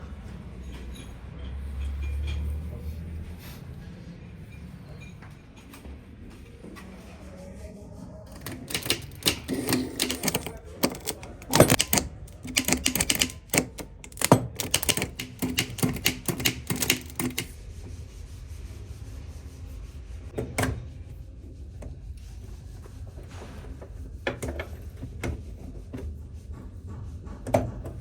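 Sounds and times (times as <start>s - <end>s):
hand tools clicking and knocking: 8.3s - 17.5s.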